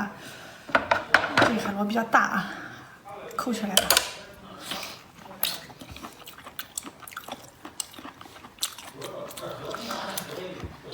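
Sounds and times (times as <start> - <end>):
person chewing and crunching: 4.6 - 10.9.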